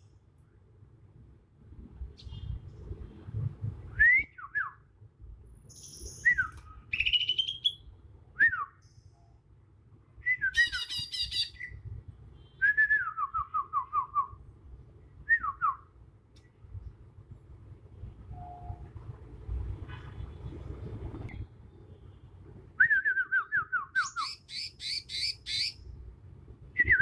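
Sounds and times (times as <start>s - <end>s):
bird singing: 5.7s - 7.9s, 10.3s - 11.8s, 23.9s - 25.8s.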